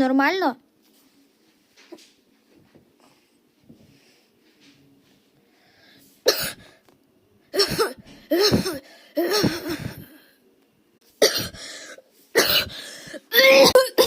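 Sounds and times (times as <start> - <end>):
girl coughing: 6.3 - 6.7, 7.6 - 10.1, 11.2 - 14.0.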